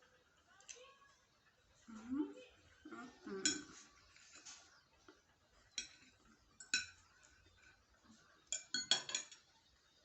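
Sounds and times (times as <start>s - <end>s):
cutlery clinking on a plate: 3.3s - 4.4s, 5.7s - 7.8s, 8.4s - 9.5s.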